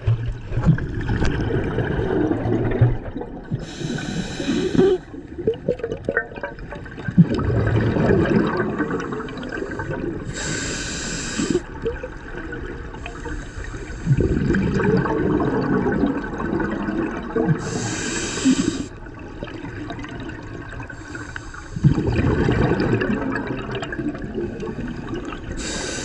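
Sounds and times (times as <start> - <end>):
underwater exhaled air bubbling: 0.0 - 26.0
regulator hissing inhalation: 3.6 - 5.2, 9.1 - 11.7, 17.6 - 19.0, 21.0 - 21.9, 25.6 - 26.0.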